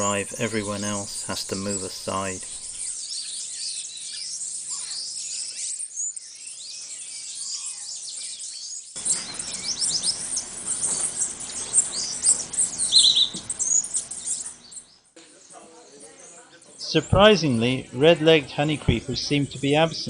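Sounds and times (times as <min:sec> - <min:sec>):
louder repeated bird notes: 0:00.0 - 0:05.8, 0:09.0 - 0:14.7
steady background hiss: 0:00.0 - 0:06.1, 0:15.2 - 0:20.0
small birds chirping: 0:00.0 - 0:20.0.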